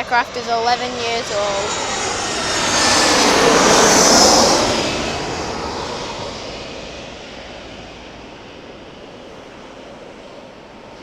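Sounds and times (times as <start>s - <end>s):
jet airliner passing overhead: 0.0s - 11.0s.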